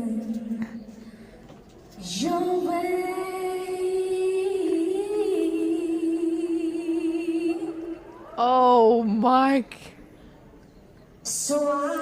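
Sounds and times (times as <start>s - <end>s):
woman singing unaccompanied: 0.0s - 1.0s, 2.0s - 8.3s, 11.3s - 12.0s.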